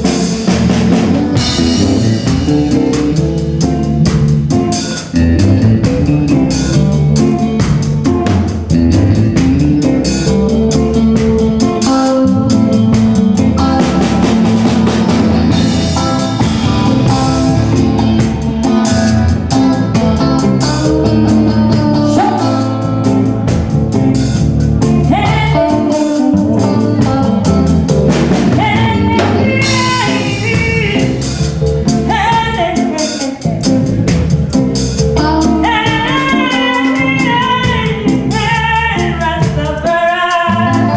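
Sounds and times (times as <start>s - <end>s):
live band playing ragga: 0.0s - 40.9s
person singing: 10.2s - 40.9s.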